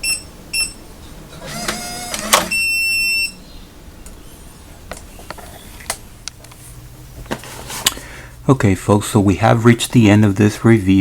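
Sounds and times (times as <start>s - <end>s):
lock motor whirring: 1.4s - 2.7s
long electronic beep: 2.5s - 3.4s.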